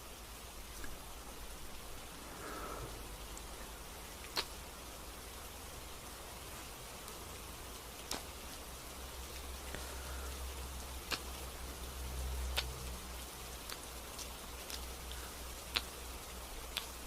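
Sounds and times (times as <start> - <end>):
gentle rain hiss: 0.0 - 17.0
drip-like clicks: 11.1 - 11.4.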